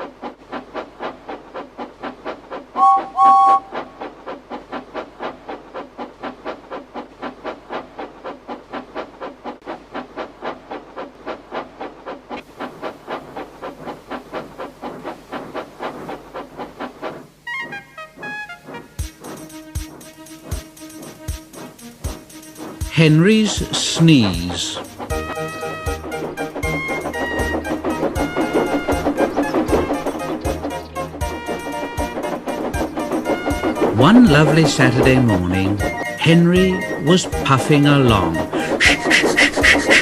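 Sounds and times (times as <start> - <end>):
steam locomotive chuffing: 0.0 - 40.0
two-note steam whistle blasts: 2.8 - 3.9.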